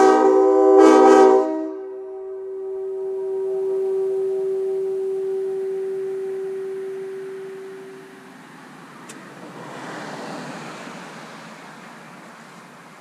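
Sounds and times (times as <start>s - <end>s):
train horns sounding a chord: 0.0s - 8.9s
passing vehicle rush: 2.4s - 13.0s.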